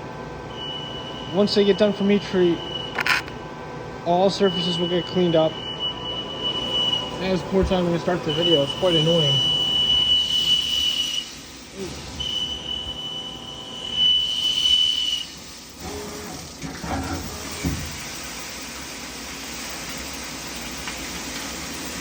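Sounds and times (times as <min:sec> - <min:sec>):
machinery high-pitched whine: 0:00.0 - 0:18.9
hiss of running equipment: 0:07.0 - 0:12.9, 0:13.9 - 0:22.0.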